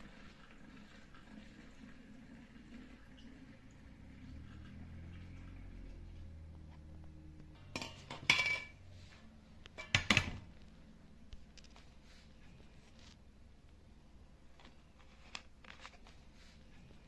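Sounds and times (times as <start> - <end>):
kitchenware clinking and clattering: 7.5 - 8.9, 9.7 - 10.5.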